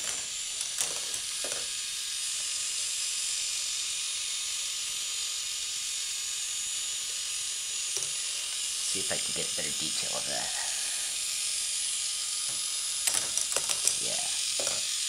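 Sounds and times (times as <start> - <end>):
ball machine whirring hiss: 0.0 - 15.0
mechanism clicks: 13.0 - 14.9.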